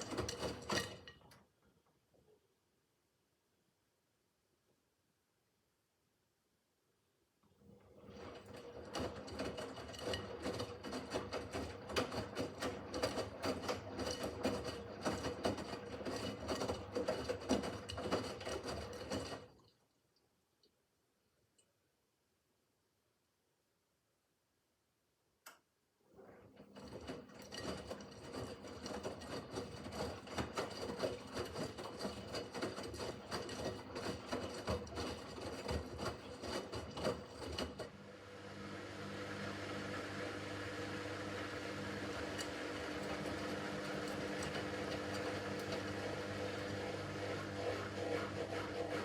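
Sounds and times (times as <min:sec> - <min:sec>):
washing machine drum tumbling laundry: 0:00.0 - 0:01.3, 0:07.8 - 0:19.5, 0:26.4 - 0:38.0, 0:39.5 - 0:49.0
washing machine motor hum: 0:07.6 - 0:19.7, 0:26.1 - 0:49.0.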